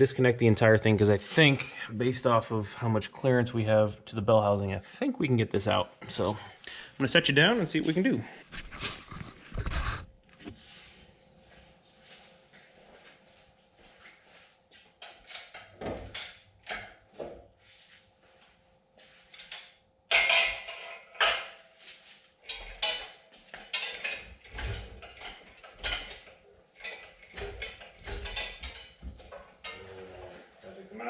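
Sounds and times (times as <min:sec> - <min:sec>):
hand tools clinking on metal: 0:22.5 - 0:29.9.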